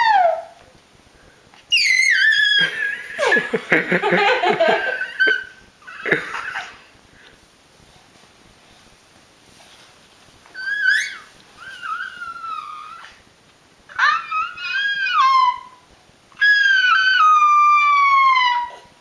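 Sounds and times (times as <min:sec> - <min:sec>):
animal whining cries: 0:00.0 - 0:00.6, 0:01.7 - 0:03.6, 0:04.6 - 0:06.7, 0:10.6 - 0:13.2, 0:13.9 - 0:15.8, 0:16.4 - 0:18.9.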